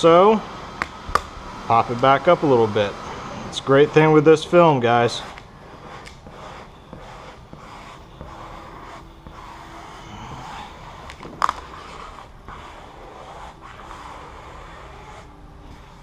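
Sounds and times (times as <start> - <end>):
squeegee scraping vinyl film: 0.1 - 16.0.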